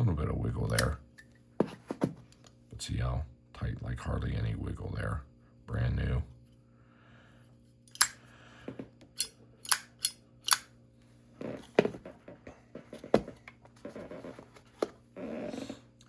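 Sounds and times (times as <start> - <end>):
lighter lid clicking open and shut: 7.9 - 8.2, 9.2 - 10.7.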